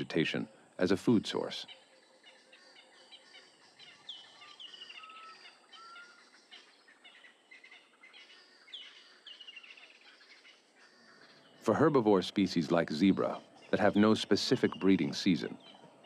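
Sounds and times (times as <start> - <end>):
birds calling: 0.0 - 16.0
steady bird whistles: 2.5 - 6.4.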